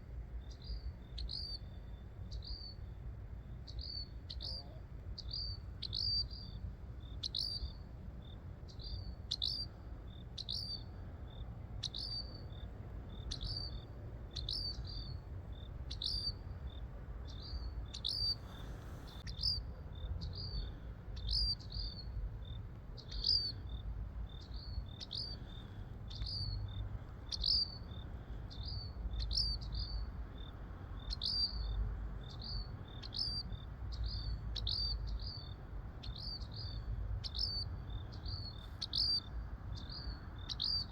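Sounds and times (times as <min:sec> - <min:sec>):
low wind rumble: 0:00.0 - 0:40.9
small bird chirping: 0:00.4 - 0:40.9.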